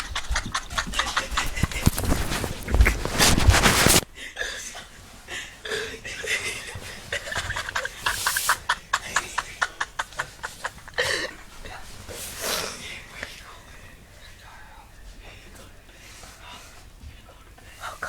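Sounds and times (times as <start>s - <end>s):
stifled laughter: 0.0s - 4.8s, 5.7s - 11.4s.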